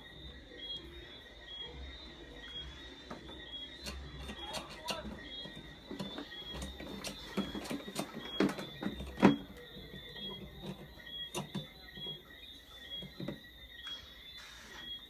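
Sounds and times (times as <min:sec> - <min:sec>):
faint steady high tone: 0:00.0 - 0:15.0
clicks and knocks of small parts: 0:03.1 - 0:12.2.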